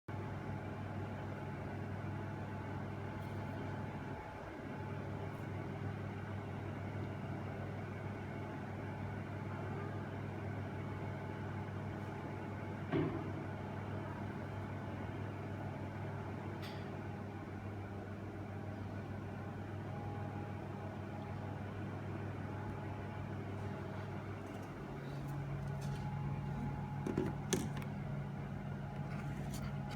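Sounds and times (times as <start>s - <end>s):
low background hum: 0.1s - 29.9s.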